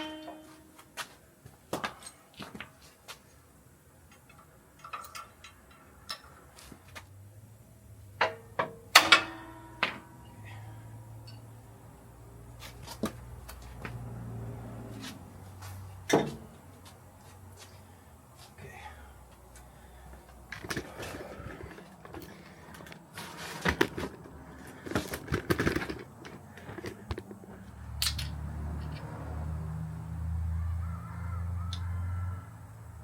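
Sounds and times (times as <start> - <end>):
short metallic ring: 0.0 - 0.8, 8.9 - 10.4
knocks and clanks: 0.0 - 0.9, 8.2 - 10.2, 16.0 - 16.6.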